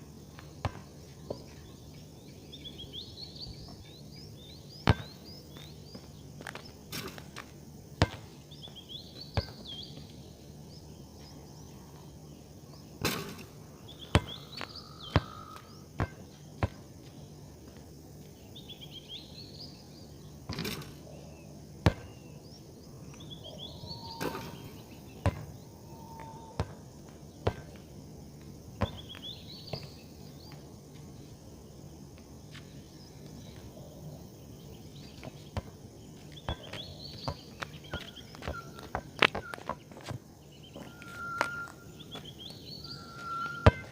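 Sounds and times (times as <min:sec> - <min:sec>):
faint low hum: 0:00.0 - 0:43.9
bird chirping: 0:13.8 - 0:15.9, 0:21.0 - 0:26.6, 0:32.8 - 0:43.9.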